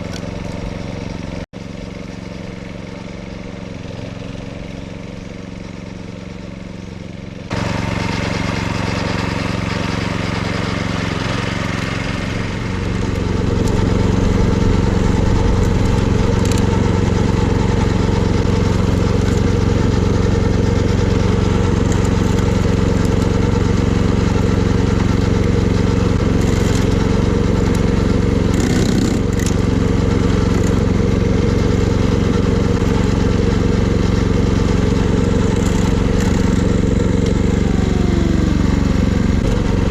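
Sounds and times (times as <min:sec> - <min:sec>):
mower engine cutting grass: 0:00.0 - 0:39.9.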